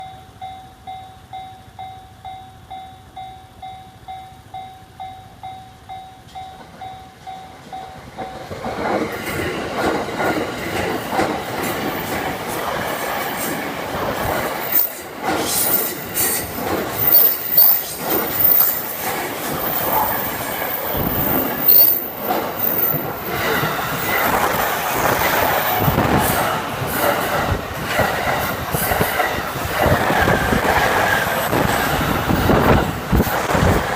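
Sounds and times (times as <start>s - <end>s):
level-crossing bell ringing: 0.0s - 8.5s.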